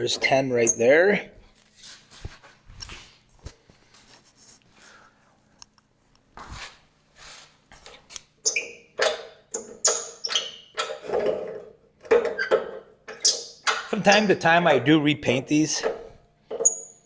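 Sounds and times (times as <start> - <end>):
squeaks and scrapes of hardware: 0.0 - 1.2, 7.8 - 14.5, 15.8 - 17.0.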